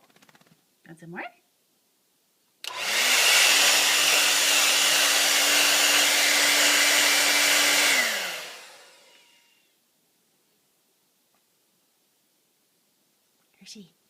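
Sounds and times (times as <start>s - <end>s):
hair dryer running: 2.6s - 9.6s.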